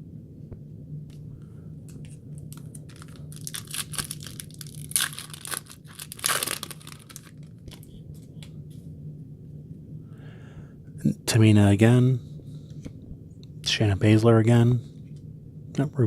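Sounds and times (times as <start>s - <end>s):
foil pack tearing and crinkling: 2.5s - 7.9s.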